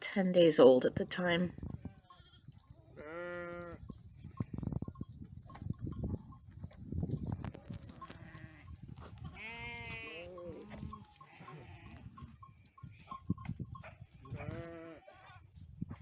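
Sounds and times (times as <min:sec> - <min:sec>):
sheep bleating: 0:01.8 - 0:03.9, 0:07.6 - 0:12.5, 0:14.2 - 0:15.5.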